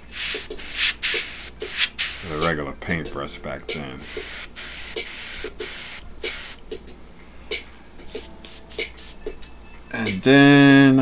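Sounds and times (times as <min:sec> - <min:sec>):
airbrush spraying hissing bursts: 0:00.0 - 0:02.5, 0:04.0 - 0:06.7, 0:08.1 - 0:09.2.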